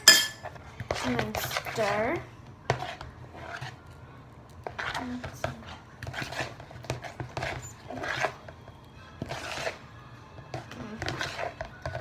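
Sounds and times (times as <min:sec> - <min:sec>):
utensil scraping and clinking bowl: 0:00.0 - 0:04.0, 0:04.6 - 0:12.0
utensil stirring slime: 0:00.4 - 0:12.0.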